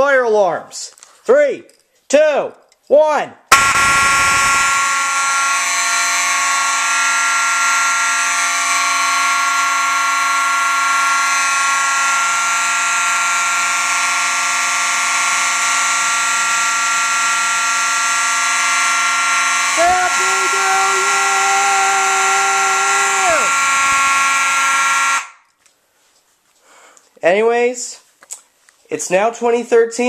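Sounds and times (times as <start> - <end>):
mechanical fire alarm horns: 3.5 - 25.5.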